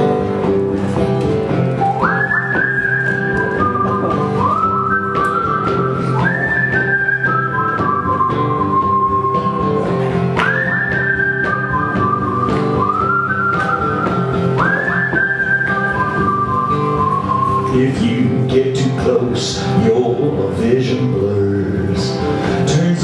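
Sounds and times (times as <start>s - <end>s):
guitar accompaniment: 0.0s - 23.0s
whistled melody: 1.6s - 9.8s, 10.4s - 18.4s.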